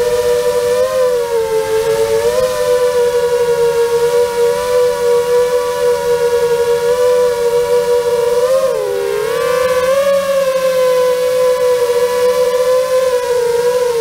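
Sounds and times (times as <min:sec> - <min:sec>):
drone motors and propellers whining: 0:00.0 - 0:14.0.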